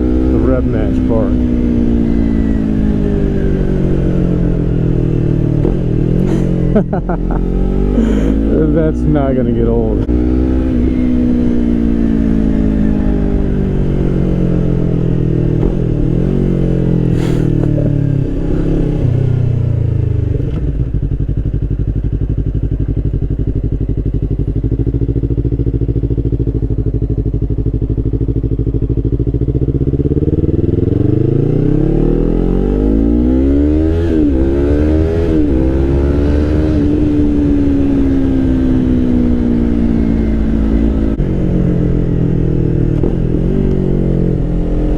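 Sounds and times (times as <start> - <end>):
motorcycle engine revving: 0.0 - 44.9
exhaust barking on downshifts: 15.6 - 19.2.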